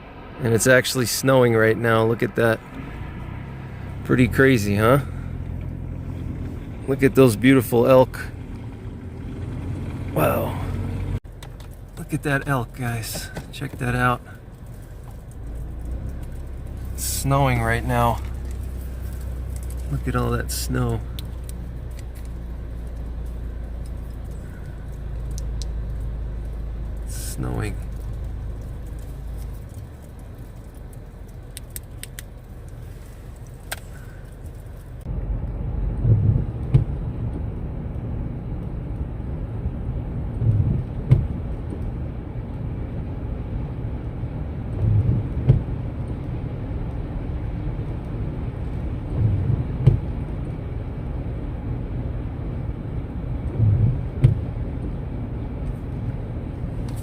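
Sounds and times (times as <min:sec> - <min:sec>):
car engine rumble: 0:00.0 - 0:57.0
low thump: 0:36.0 - 0:37.0, 0:40.4 - 0:41.4, 0:49.2 - 0:50.1, 0:53.6 - 0:54.5.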